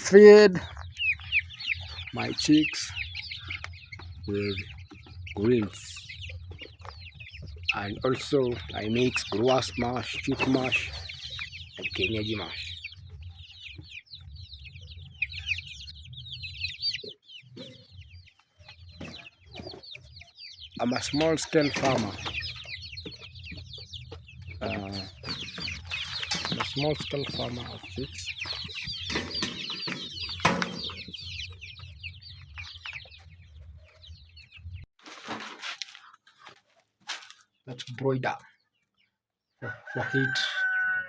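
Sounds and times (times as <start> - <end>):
chicks cheeping: 0.0 - 34.9, 36.0 - 41.0.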